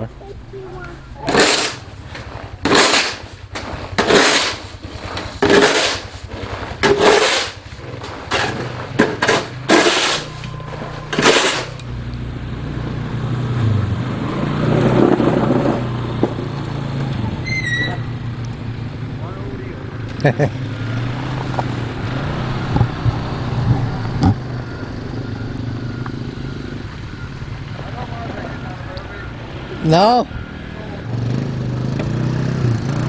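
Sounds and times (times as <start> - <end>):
steady engine hum: 0.0 - 33.0
loud noisy strokes: 1.2 - 12.0.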